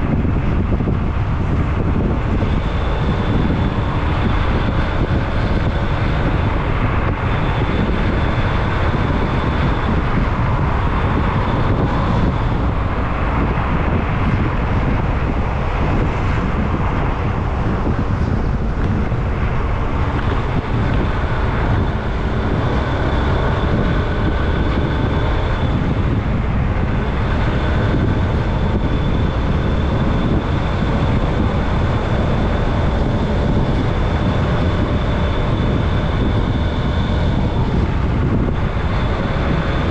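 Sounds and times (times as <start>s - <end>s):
vehicle engine and road noise: 0.0s - 39.9s.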